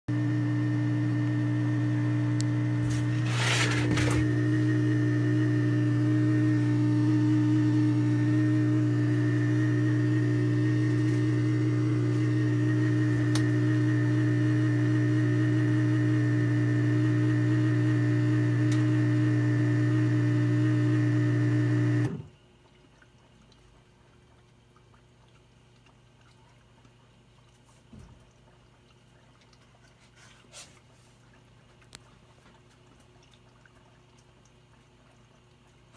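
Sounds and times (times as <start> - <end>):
dishwasher humming: 0.1 - 22.3.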